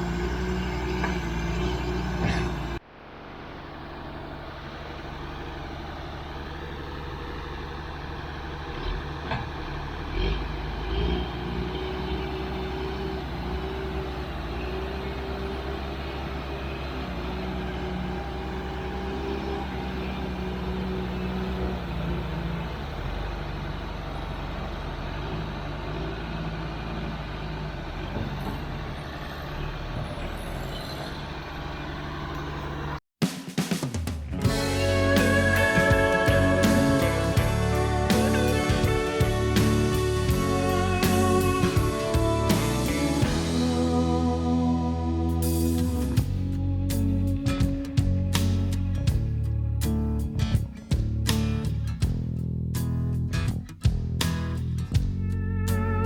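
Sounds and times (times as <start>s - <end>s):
diesel engine running: 0.0s - 33.0s, 34.4s - 56.0s.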